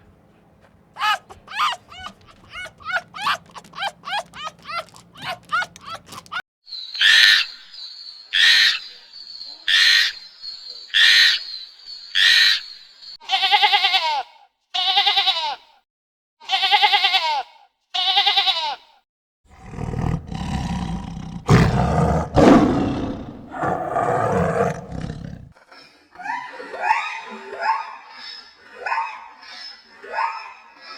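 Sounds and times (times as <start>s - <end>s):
animal sharp cries: 1.0s - 6.4s
animal wavering pitched calls: 1.0s - 6.4s
deep rough animal roar: 19.5s - 25.6s.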